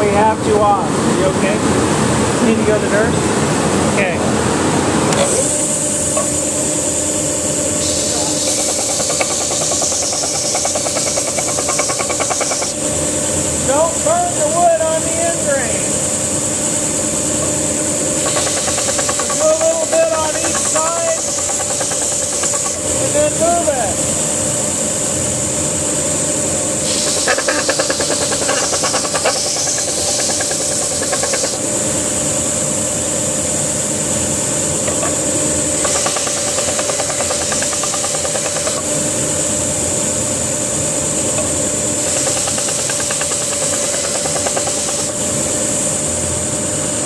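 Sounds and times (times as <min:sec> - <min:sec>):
dust collector hum: 0:00.0 - 0:47.0
belt sander running: 0:04.9 - 0:47.0
wood sanding hiss: 0:07.8 - 0:12.8, 0:13.7 - 0:24.2, 0:26.8 - 0:32.8, 0:35.8 - 0:39.4, 0:41.8 - 0:46.0.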